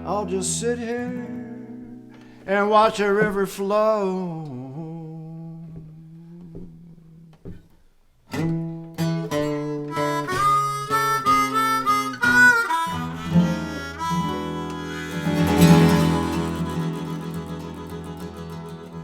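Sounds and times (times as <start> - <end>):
strummed acoustic guitar: 0.0 - 7.7, 8.3 - 19.0
harmonica melody: 9.0 - 19.0.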